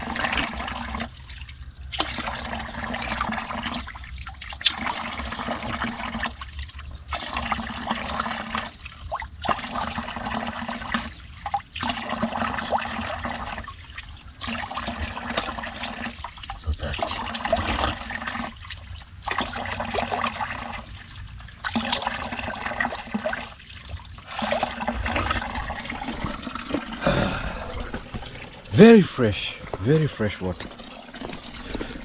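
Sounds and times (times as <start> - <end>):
stream water splashing: 11.7 - 32.0.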